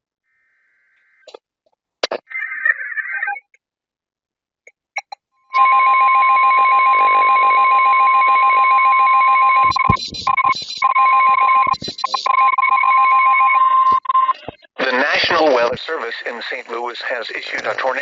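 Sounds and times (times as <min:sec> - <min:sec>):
steady high alert tone: 0:05.6 - 0:15.2.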